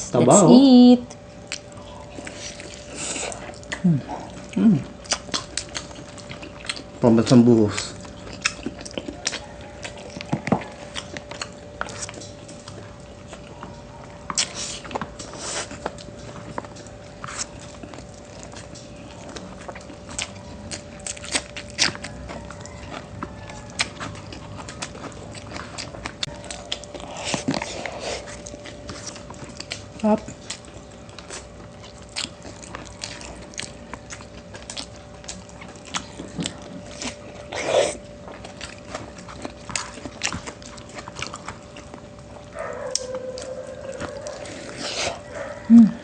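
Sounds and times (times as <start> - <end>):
faint steady hum: 0.0 - 46.0
chewing and biting: 1.1 - 46.0.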